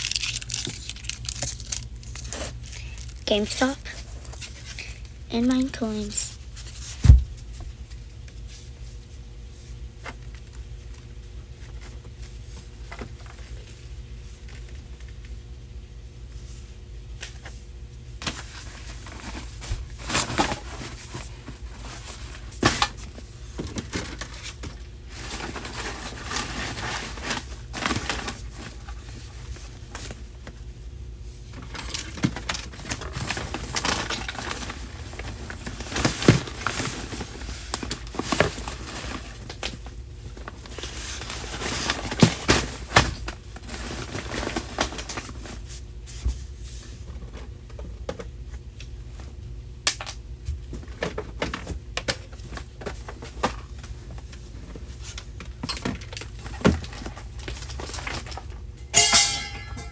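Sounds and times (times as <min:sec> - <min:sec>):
plastic and paper rustling: 0:00.0 - 0:08.8, 0:18.2 - 0:30.6, 0:31.6 - 0:47.9, 0:50.6 - 0:58.6.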